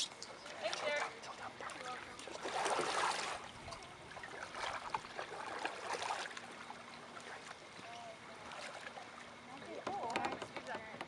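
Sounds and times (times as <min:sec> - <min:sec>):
paddles moving through water: 0:00.0 - 0:11.0.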